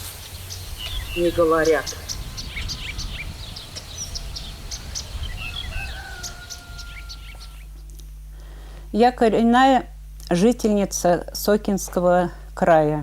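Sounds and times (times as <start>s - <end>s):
songbirds chirping: 0.0s - 8.0s
low rumble of outdoor noise: 0.0s - 13.0s.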